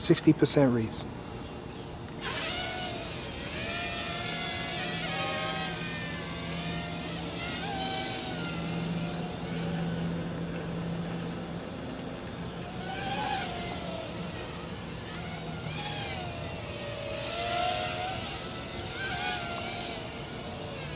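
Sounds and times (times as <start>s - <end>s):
crickets chirping: 0.0s - 3.3s, 5.4s - 8.0s, 8.6s - 18.0s, 19.2s - 20.9s
quadcopter motors whirring: 0.0s - 20.9s.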